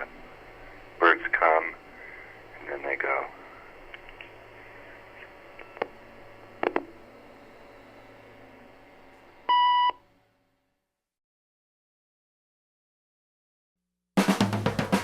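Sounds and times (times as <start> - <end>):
faint line hiss and hum: 0.0 - 10.5.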